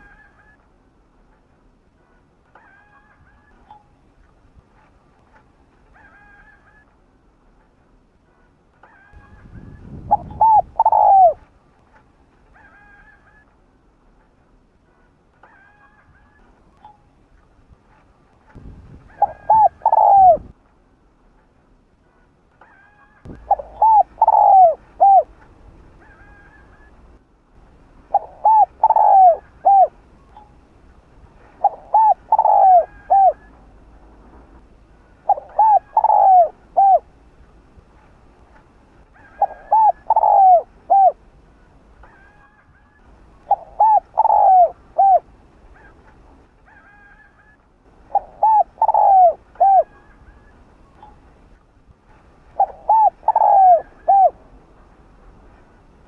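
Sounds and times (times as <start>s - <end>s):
dove cooing: 9.1s - 11.4s, 19.0s - 20.5s, 23.3s - 25.4s, 28.1s - 30.5s, 31.4s - 33.7s, 35.2s - 37.1s, 39.2s - 41.2s, 43.4s - 46.0s, 46.7s - 51.2s, 52.5s - 54.4s.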